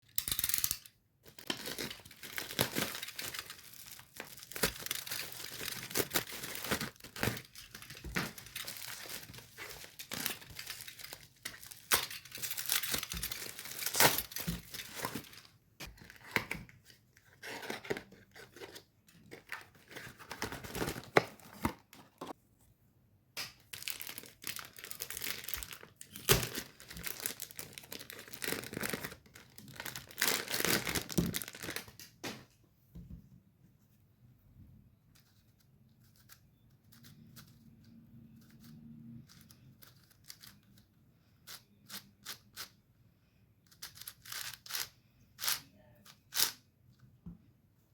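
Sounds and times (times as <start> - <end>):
packaging crinkling and tearing: 1.2 - 16.4, 23.7 - 32.0.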